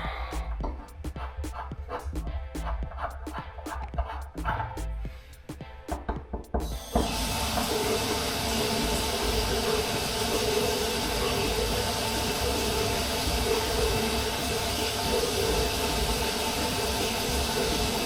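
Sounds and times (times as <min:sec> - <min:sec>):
faucet water pouring into sink: 0:07.0 - 0:18.0.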